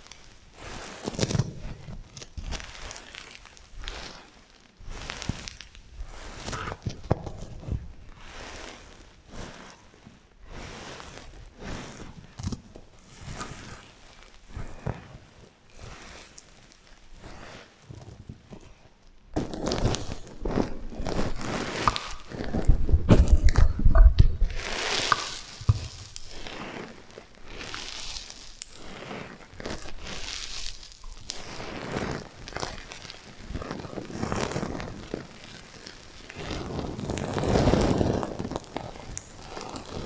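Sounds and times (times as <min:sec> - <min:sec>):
sequins rubbed by hand: 0:02.4 - 0:06.9, 0:07.6 - 0:12.1, 0:19.4 - 0:22.9, 0:24.5 - 0:40.0.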